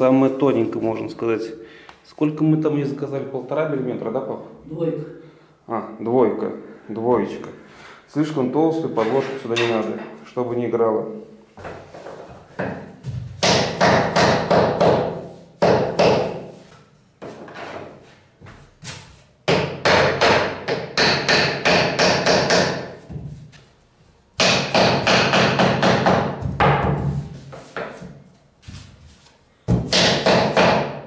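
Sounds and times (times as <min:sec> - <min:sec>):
hammer knocking laminate boards: 0:12.6 - 0:16.5, 0:19.5 - 0:23.4, 0:24.4 - 0:28.2, 0:29.7 - 0:31.0.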